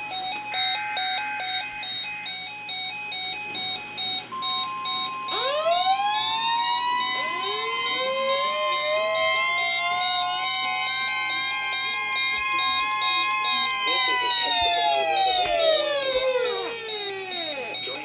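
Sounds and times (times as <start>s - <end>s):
steady high tone: 0.0s - 18.0s
rising siren wail: 5.3s - 18.0s
two-pitch electronic warble: 5.3s - 18.0s.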